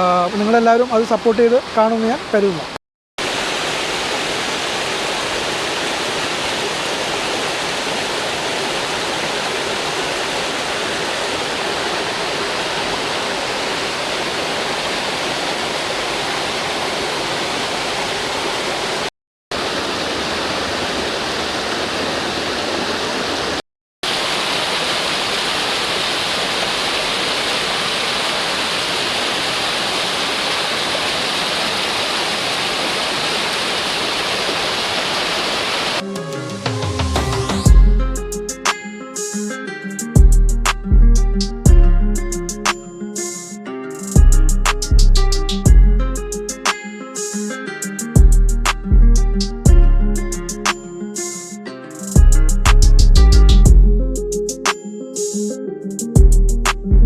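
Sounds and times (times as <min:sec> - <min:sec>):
waterfall rushing: 0:00.5 - 0:37.8.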